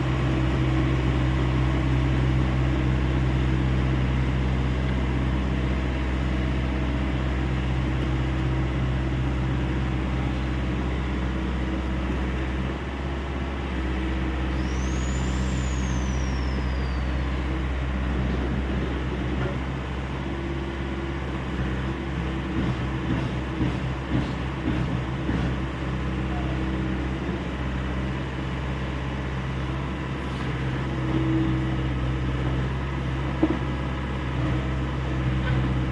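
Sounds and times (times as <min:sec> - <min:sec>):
excavator diesel engine running: 0:00.0 - 0:35.9.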